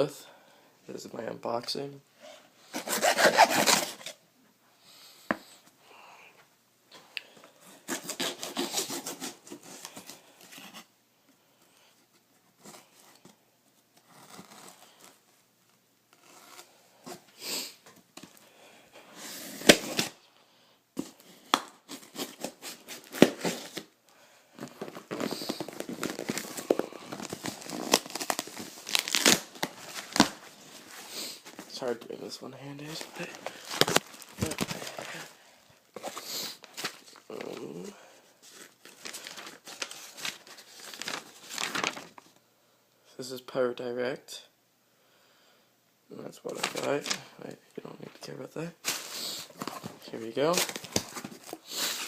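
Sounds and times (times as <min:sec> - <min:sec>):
cardboard box tearing: 0:02.8 - 0:04.2, 0:07.9 - 0:09.9, 0:21.9 - 0:23.9, 0:24.8 - 0:30.4, 0:33.0 - 0:35.3.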